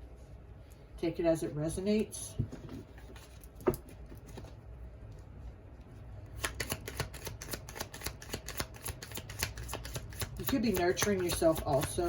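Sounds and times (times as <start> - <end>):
cards being shuffled: 6.3 - 12.0.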